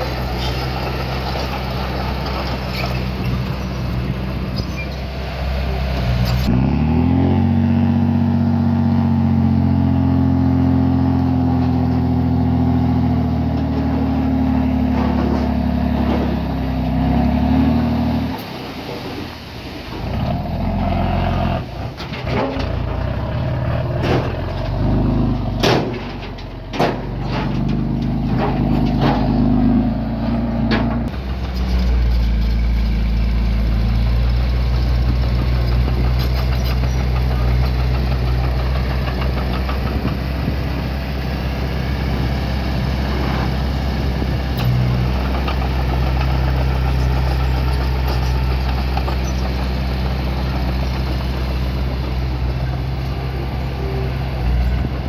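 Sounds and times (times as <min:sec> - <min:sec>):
diesel engine running: 0:00.0 - 0:55.0
sharp knocks and clanks: 0:24.0 - 0:29.6.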